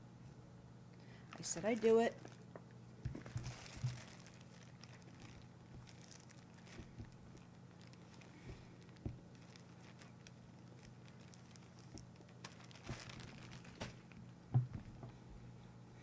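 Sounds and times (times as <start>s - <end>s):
steady low hum: 0.0s - 16.0s
dry pepper crunching: 1.3s - 15.1s.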